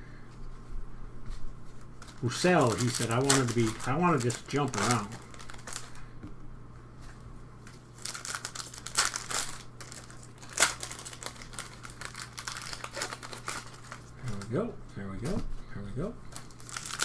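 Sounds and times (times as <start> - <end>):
foil wrappers crinkling: 1.7 - 6.1, 7.6 - 14.7, 16.2 - 17.0
foil wrapper tearing: 2.0 - 6.0, 7.9 - 14.6, 16.3 - 17.0.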